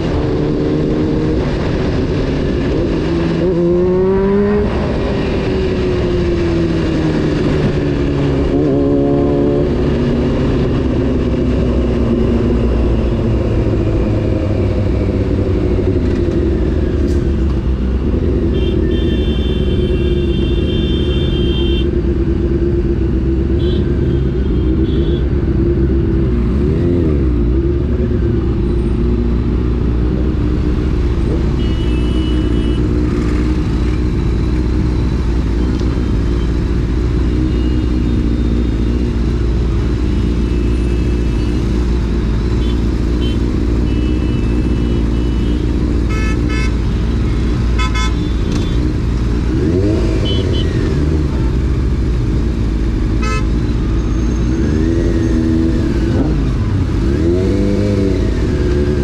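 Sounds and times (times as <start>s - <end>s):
vehicle horns honking: 18.4s - 22.0s, 23.5s - 25.3s, 31.5s - 33.0s, 42.6s - 48.9s, 50.2s - 50.8s, 53.2s - 53.6s.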